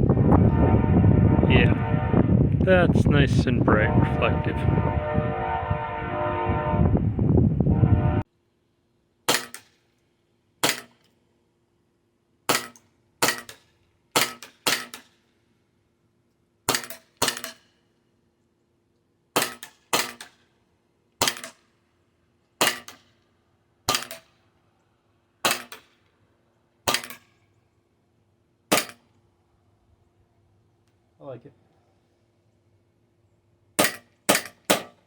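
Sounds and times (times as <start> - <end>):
airsoft pistol shots: 14.2 - 15.0, 23.9 - 24.3.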